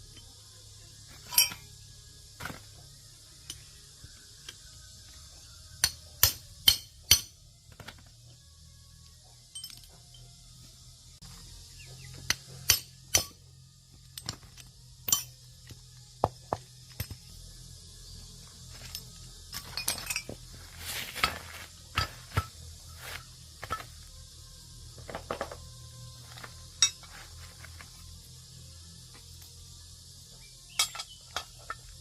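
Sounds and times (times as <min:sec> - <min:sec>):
metal tools clinking: 0:01.2 - 0:01.7, 0:09.5 - 0:10.3, 0:14.1 - 0:15.4, 0:18.7 - 0:22.5, 0:26.8 - 0:27.8, 0:30.7 - 0:32.0.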